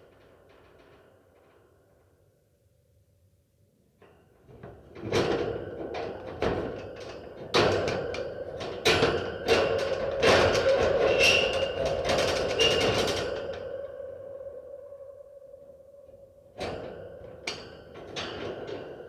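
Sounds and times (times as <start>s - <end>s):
steady ringing drone: 5.9s - 19.0s.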